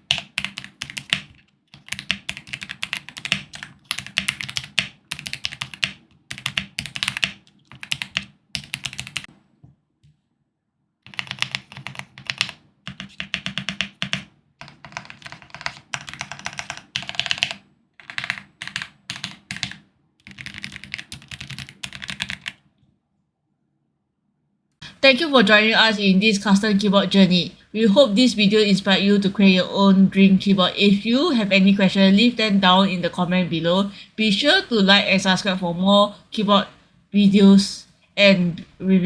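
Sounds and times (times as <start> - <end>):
typing on mechanical keyboard: 0.0 - 9.3, 11.0 - 22.6.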